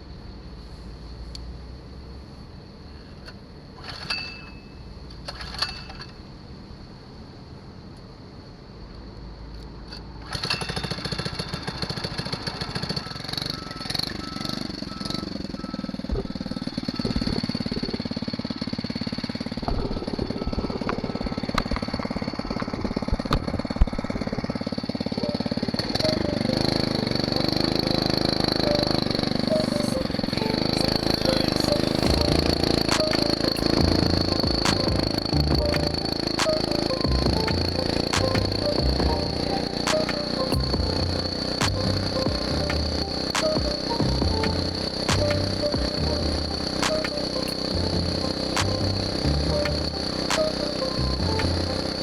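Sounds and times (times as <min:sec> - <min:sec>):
small engine starting and puttering: 0:03.0 - 0:06.2, 0:09.9 - 0:52.0.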